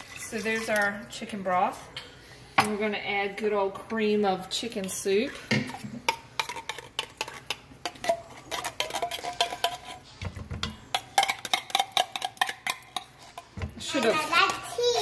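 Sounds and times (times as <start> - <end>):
utensil scraping metal can: 6.4 - 10.2.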